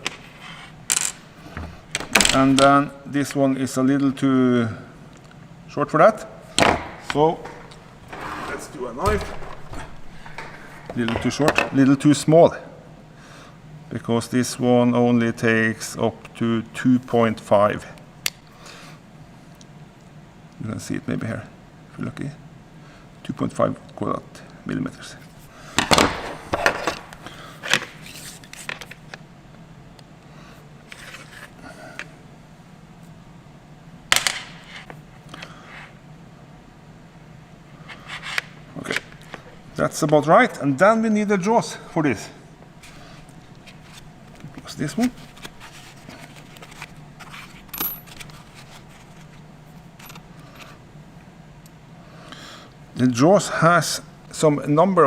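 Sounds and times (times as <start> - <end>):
tools clicking and scraping: 45.4 - 49.3.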